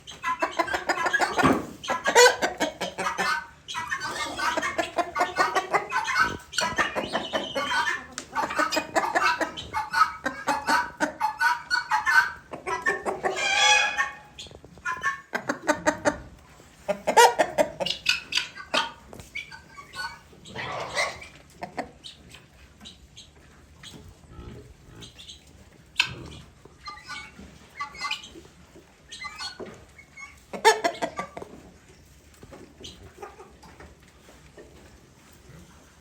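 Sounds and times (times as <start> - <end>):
guineafowl calling: 0.0 - 16.0, 16.9 - 24.0, 26.0 - 28.4, 29.1 - 31.3.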